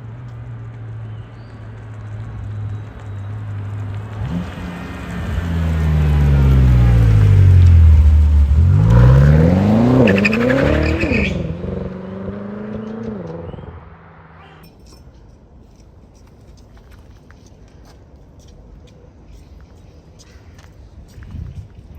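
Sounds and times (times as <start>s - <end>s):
exhaust crackles: 0.1s - 14.6s
car engine accelerating hard: 3.5s - 14.6s.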